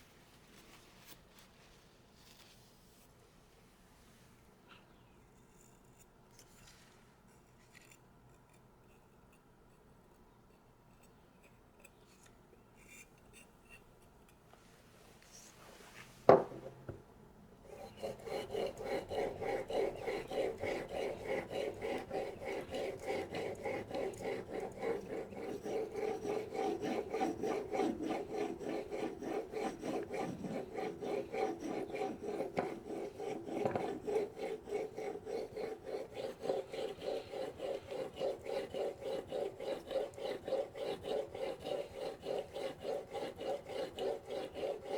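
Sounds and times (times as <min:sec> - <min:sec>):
knife rasping on whetstone: 0:17.7 - 0:44.9.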